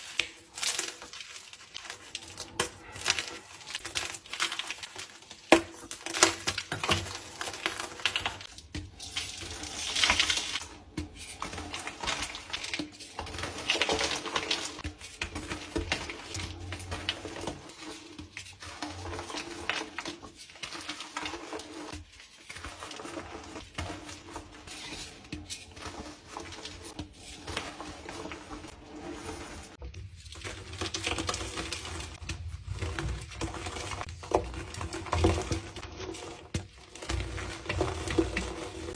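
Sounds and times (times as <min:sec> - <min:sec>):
chalk being crushed and crumbled: 0:00.0 - 0:29.8.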